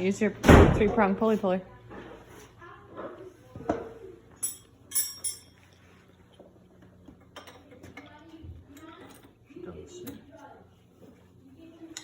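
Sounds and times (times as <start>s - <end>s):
metallic clinks of steel tools: 4.4s - 5.5s.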